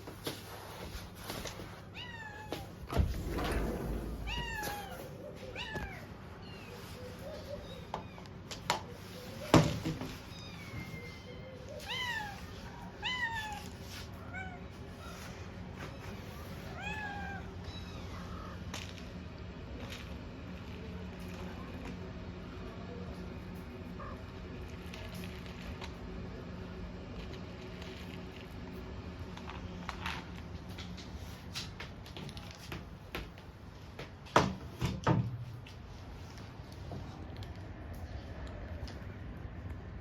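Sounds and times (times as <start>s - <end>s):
kittens meowing: 3.9s - 6.8s, 10.3s - 15.3s, 16.4s - 18.7s.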